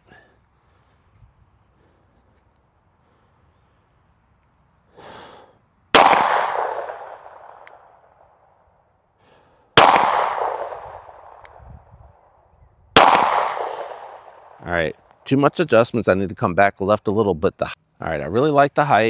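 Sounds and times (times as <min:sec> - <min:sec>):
pistol shots echoing: 0:06.0 - 0:07.7, 0:09.8 - 0:11.4, 0:13.0 - 0:14.6.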